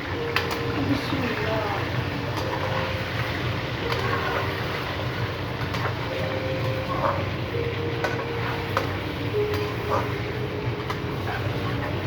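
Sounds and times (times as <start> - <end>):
chicken frying in hot oil: 0.0 - 12.0
low steady hum: 0.0 - 12.0.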